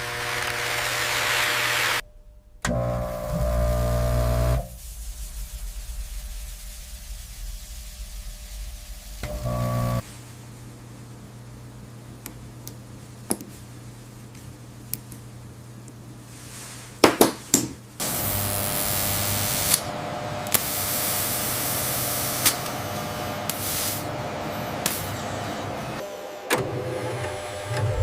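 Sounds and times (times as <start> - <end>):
loud steady air hiss: 0.0 - 2.0, 2.7 - 10.9, 18.0 - 26.5
machinery hum: 0.0 - 13.2, 18.0 - 28.0.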